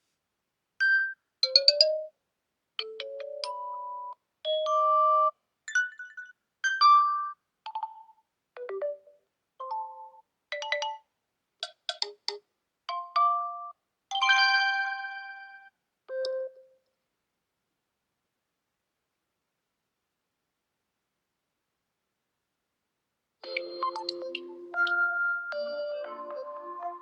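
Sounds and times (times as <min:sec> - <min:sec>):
electronic chime ringtone: 0:04.8 - 0:07.4, 0:14.2 - 0:16.6, 0:23.5 - 0:27.0.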